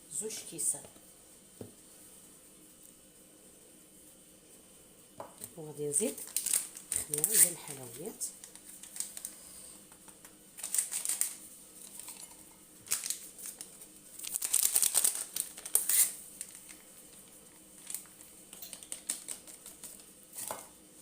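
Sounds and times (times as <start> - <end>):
paper sachets crinkling: 6.0 - 9.4, 10.6 - 20.2
paper tearing: 6.4 - 7.6, 14.2 - 16.2.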